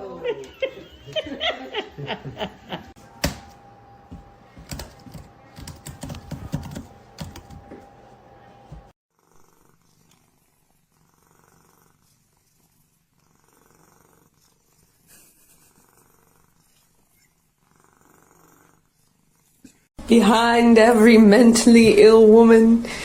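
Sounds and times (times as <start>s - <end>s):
cat purring: 8.7s - 19.9s.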